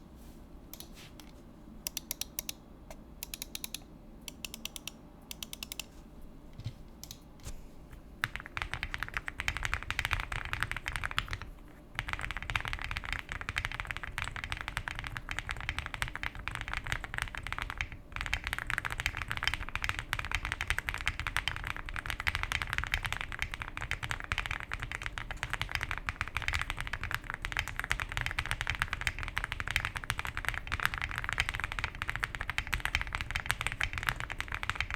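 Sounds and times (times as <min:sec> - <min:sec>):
mechanical keyboard typing: 0:08.2 - 0:34.9.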